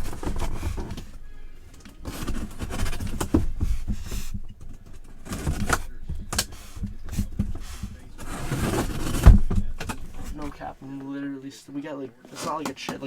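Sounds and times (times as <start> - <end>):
cardboard packaging rustling: 0.0 - 10.8.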